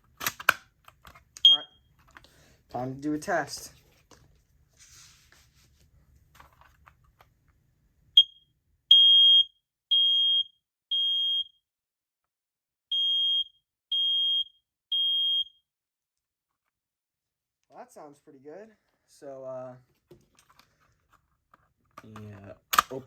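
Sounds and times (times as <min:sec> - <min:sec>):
smoke alarm beeping: 0:01.4 - 0:01.8, 0:08.2 - 0:11.6, 0:12.9 - 0:15.6
smoke alarm chirp: 0:01.4 - 0:01.8, 0:08.2 - 0:11.6, 0:12.9 - 0:15.6.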